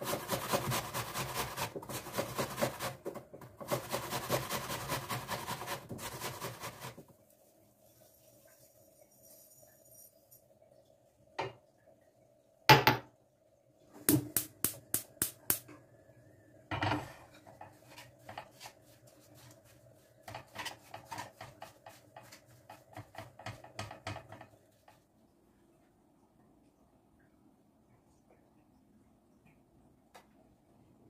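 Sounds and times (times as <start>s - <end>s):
faint hum: 7.2s - 18.0s, 24.6s - 31.0s
dishes clattering and clinking: 16.7s - 18.5s.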